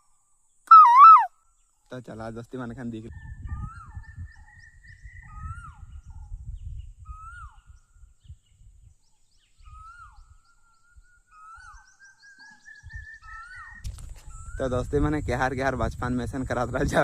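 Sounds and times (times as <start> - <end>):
bird calls: 0.0 - 1.9, 3.0 - 14.9
steady high whistling tone: 0.7 - 1.3.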